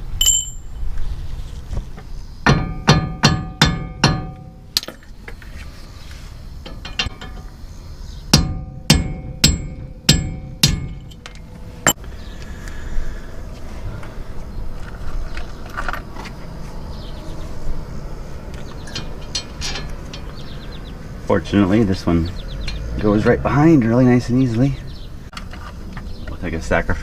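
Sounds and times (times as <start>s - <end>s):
hammer striking metal punch: 2.4s - 4.9s, 8.3s - 11.2s.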